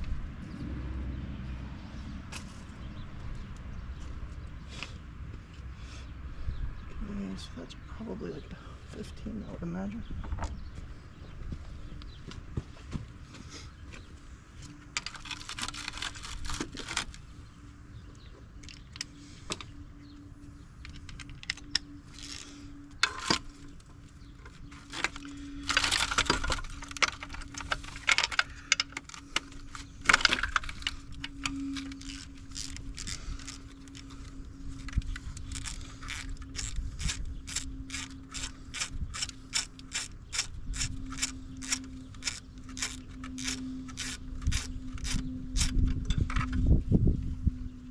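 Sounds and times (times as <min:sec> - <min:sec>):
socket ratchet clicking: 0:34.7 - 0:46.6.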